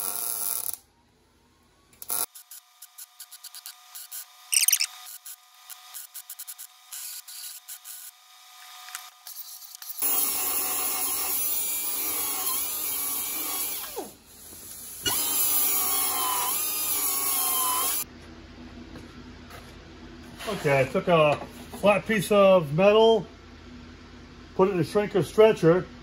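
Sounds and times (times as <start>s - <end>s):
angle grinder grinding metal: 3.0s - 14.1s, 15.0s - 18.1s.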